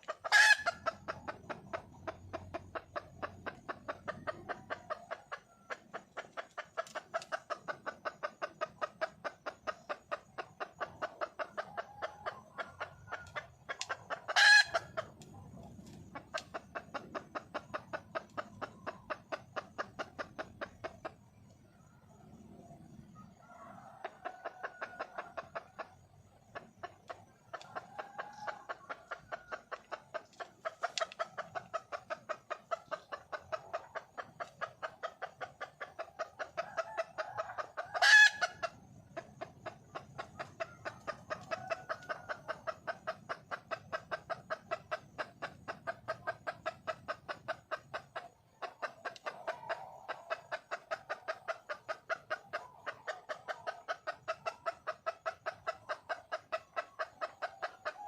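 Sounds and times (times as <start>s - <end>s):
hen clucking: 0.0s - 58.0s
sharp hen call: 38.0s - 38.5s.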